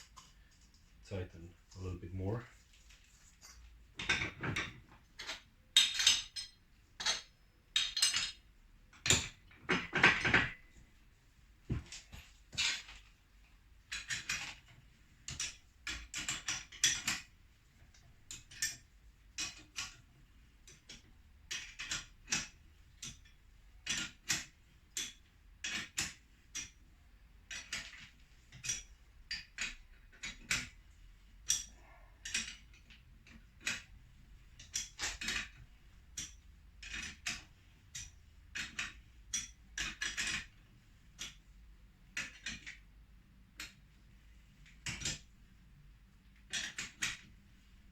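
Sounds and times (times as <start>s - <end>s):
metal tools clinking on steel: 3.4s - 8.4s.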